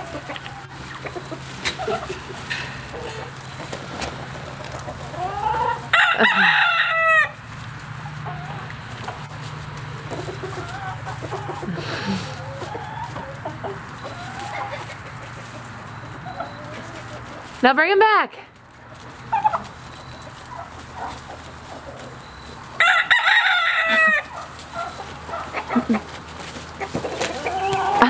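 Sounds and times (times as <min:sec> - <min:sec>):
chickens clucking softly: 0:00.0 - 0:17.6, 0:18.7 - 0:28.0
rooster crowing: 0:05.2 - 0:07.4, 0:22.2 - 0:25.9, 0:27.3 - 0:28.0.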